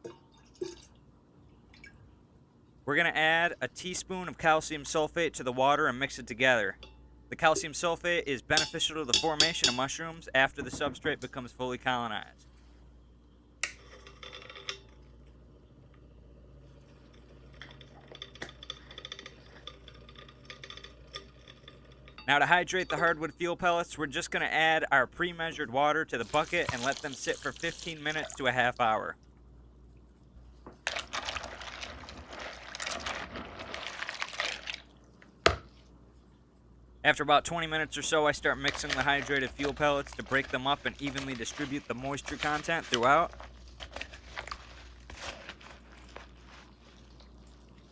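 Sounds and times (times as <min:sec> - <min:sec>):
teaspoon clinking against glass: 0:08.6 - 0:09.9
water splashing into bucket: 0:26.2 - 0:28.6, 0:30.9 - 0:35.0.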